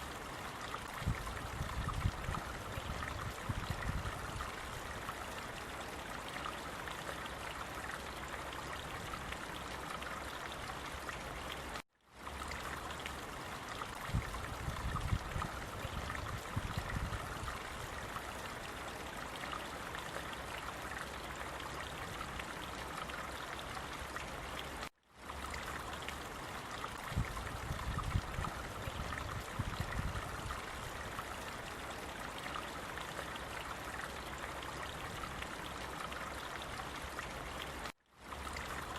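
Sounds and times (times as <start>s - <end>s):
stream water running: 0.0s - 38.9s.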